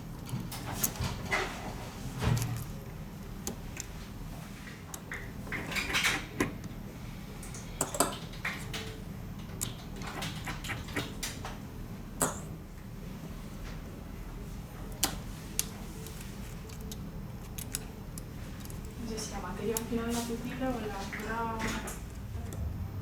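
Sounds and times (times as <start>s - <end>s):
steady low hum: 11.2s - 23.0s.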